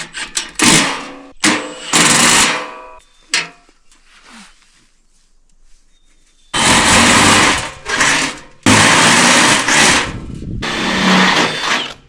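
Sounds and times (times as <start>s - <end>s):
power drill drilling into steel: 6.6s - 12.0s.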